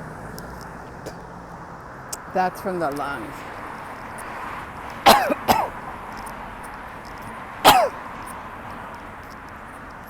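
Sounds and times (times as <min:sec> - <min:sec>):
woman coughing: 0:05.1 - 0:05.8, 0:07.7 - 0:08.0.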